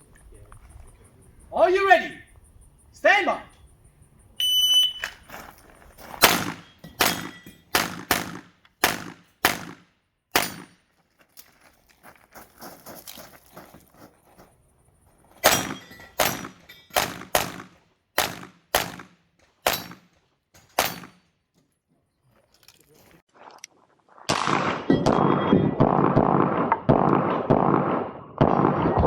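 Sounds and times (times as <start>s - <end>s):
handgun shots: 6.2s - 10.8s, 15.4s - 20.1s, 20.8s - 21.2s.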